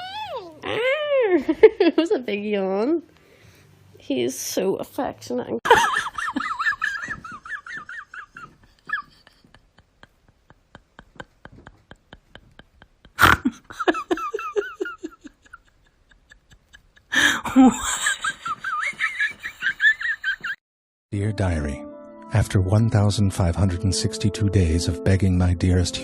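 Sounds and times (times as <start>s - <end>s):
person laughing: 5.7s - 20.6s.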